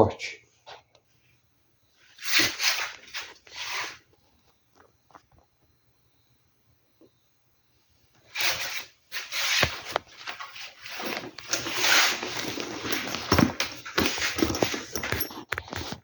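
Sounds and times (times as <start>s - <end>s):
bag and packaging rustling: 8.3s - 16.0s.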